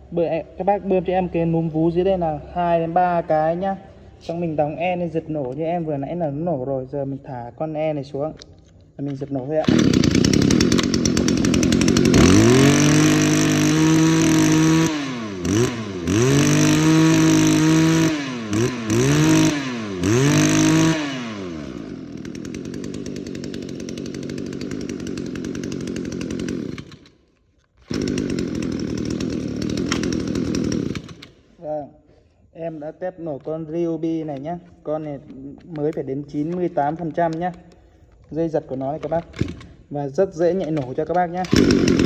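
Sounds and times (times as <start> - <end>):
brush cutter engine revving: 9.6 - 27.2, 27.8 - 31.6, 39.0 - 39.8, 40.4 - 42.0.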